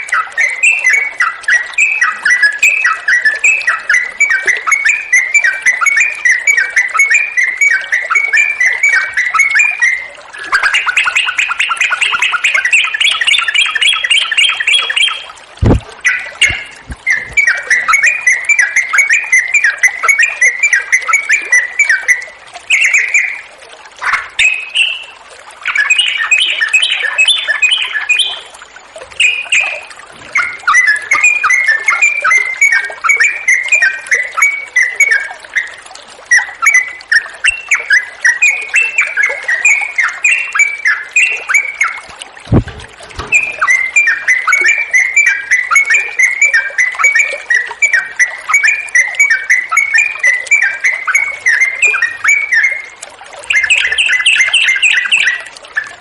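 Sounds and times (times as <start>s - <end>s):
bulbul singing: 0.0s - 56.0s
sharp knock: 15.6s - 15.9s.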